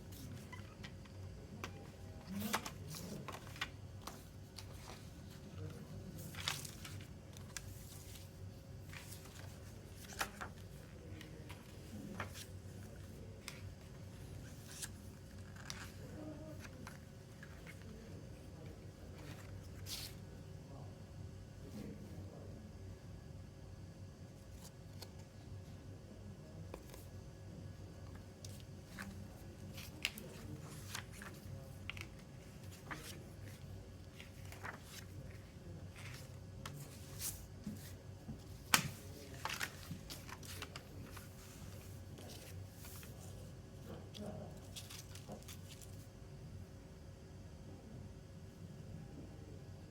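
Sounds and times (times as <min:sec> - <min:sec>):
faint low hum: 0:00.0 - 0:49.9
plastic and paper rustling: 0:00.1 - 0:18.1, 0:28.5 - 0:46.1.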